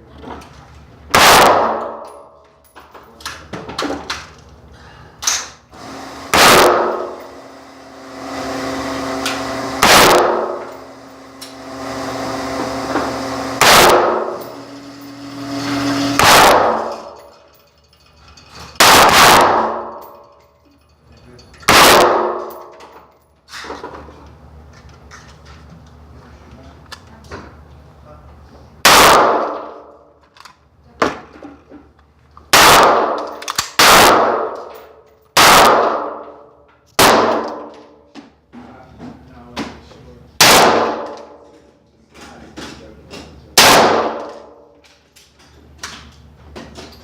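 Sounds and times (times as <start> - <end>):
rifle shots with echo: 1.2 - 2.0, 6.3 - 7.1, 9.8 - 10.6, 13.6 - 14.4, 16.2 - 17.1, 18.8 - 19.9, 21.7 - 22.5, 28.9 - 29.8, 32.5 - 34.6, 35.4 - 36.2, 37.0 - 37.7, 40.4 - 41.2, 43.6 - 44.6.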